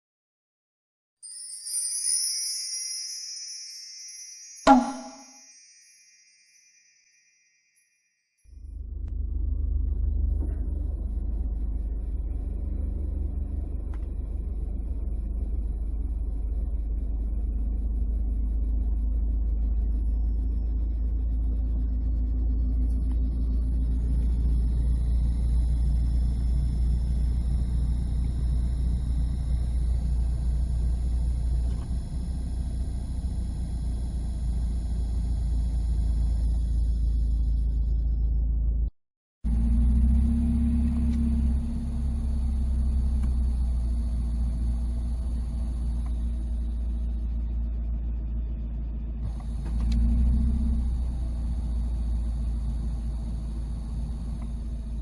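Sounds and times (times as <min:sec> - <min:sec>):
high whine: 0:08.5 - 0:38.7
heater blower motor rumble: 0:08.6 - 0:38.6, 0:39.5 - 0:55.0.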